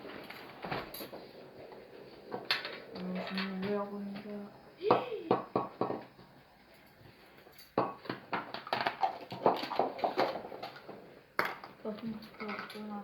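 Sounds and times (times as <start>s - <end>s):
small hard object clattering: 8.0s - 13.0s.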